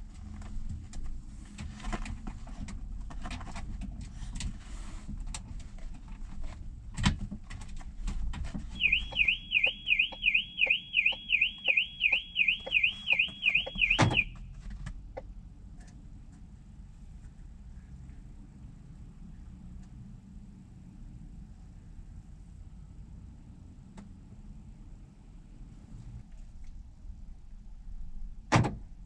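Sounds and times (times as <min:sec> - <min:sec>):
warbling car alarm siren: 0:08.8 - 0:14.4.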